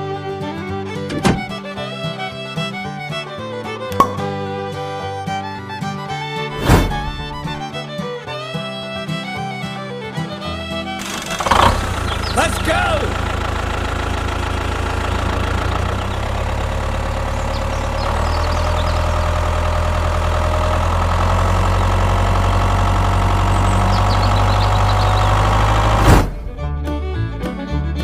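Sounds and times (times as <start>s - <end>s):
engine running: 0.0s - 28.0s
sharp click: 3.9s - 4.4s.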